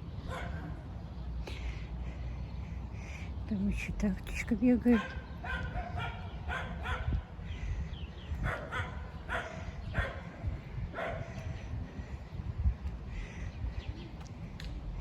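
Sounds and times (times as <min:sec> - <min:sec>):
dog barking: 0:00.3 - 0:00.7, 0:05.0 - 0:07.1, 0:08.4 - 0:10.2, 0:10.9 - 0:11.3.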